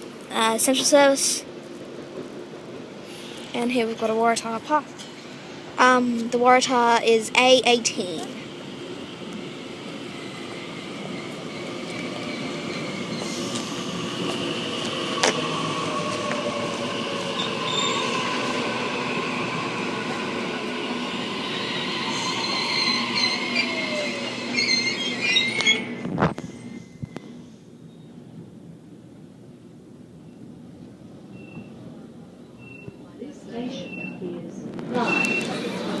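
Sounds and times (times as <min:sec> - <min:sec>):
train motor whine: 0:08.3 - 0:28.1
wheel and brake squeal: 0:11.2 - 0:13.6, 0:17.4 - 0:18.3, 0:21.5 - 0:28.2, 0:31.3 - 0:31.8, 0:32.6 - 0:33.0, 0:35.0 - 0:35.7.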